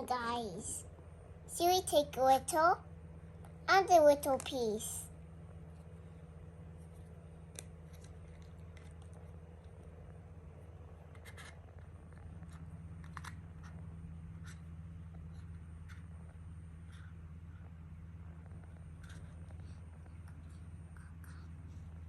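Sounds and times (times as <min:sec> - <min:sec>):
steady low hum: 0:00.0 - 0:22.0
gum packaging clicks and rustles: 0:06.8 - 0:10.0.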